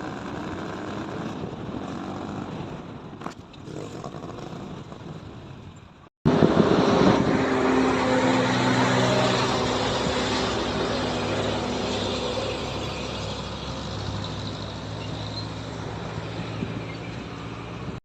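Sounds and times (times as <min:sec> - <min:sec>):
motor vehicle engine hum: 0:00.0 - 0:18.0
road noise: 0:00.0 - 0:18.0.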